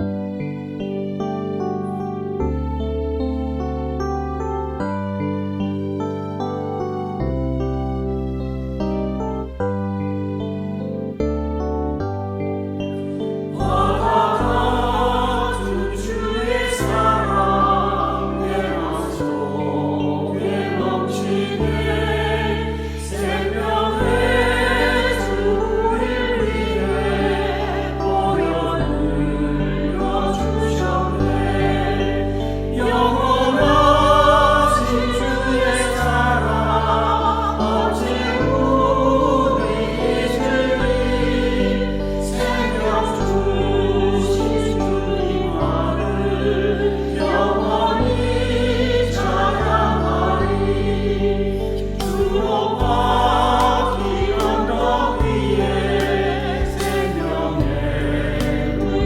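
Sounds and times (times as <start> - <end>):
long held bass notes: 2.4 - 59.0
choir singing in parts: 13.0 - 59.0.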